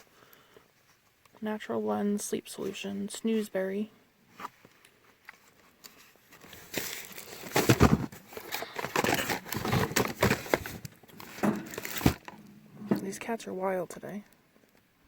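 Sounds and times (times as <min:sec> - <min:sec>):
packaging crinkling and rustling: 0:04.4 - 0:12.4.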